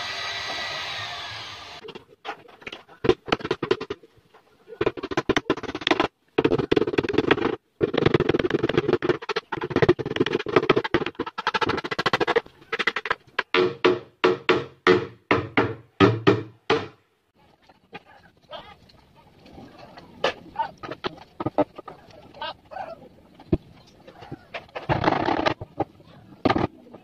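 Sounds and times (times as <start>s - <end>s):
power tool motor whining: 0.0s - 1.8s.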